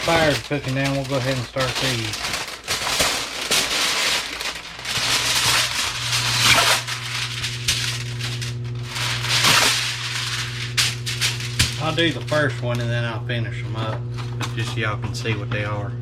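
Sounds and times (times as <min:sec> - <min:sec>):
foil crinkling: 0:00.0 - 0:14.3
steady low hum: 0:00.0 - 0:16.0.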